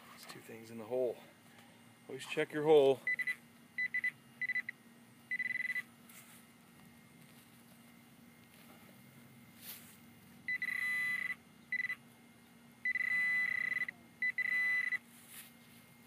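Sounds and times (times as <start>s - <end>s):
pinpointer buzzy electronic tone: 3.0s - 8.6s, 9.3s - 12.2s, 12.8s - 16.0s.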